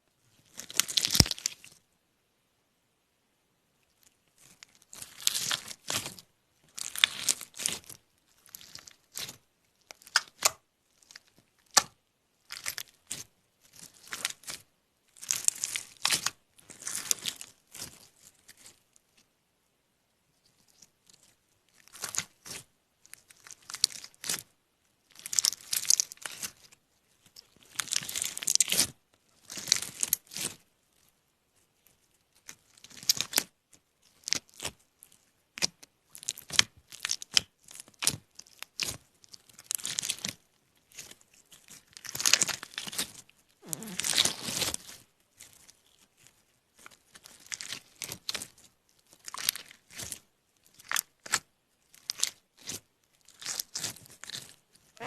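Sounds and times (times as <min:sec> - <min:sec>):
crinkling and tearing: 0:00.4 - 0:01.8, 0:15.2 - 0:18.8, 0:25.1 - 0:31.1, 0:31.8 - 0:55.0.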